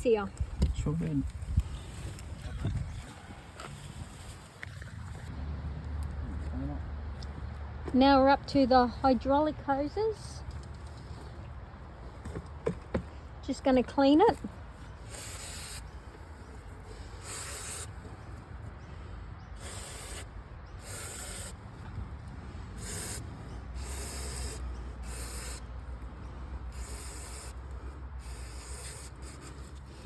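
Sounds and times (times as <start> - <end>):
hissing scrub strokes: 16.9 - 18.0, 22.7 - 25.8, 26.7 - 30.0.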